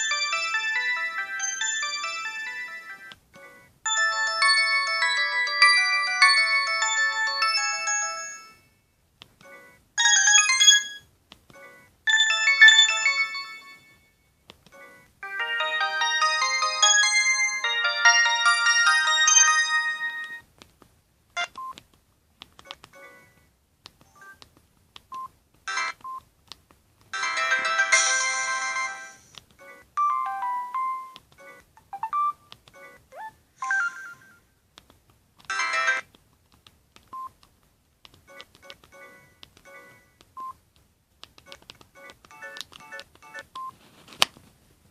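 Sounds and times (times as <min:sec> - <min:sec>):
phone ringtone melodies: 0:00.0 - 0:08.7, 0:09.4 - 0:14.1, 0:14.8 - 0:20.4, 0:27.2 - 0:34.4, 0:42.0 - 0:43.5.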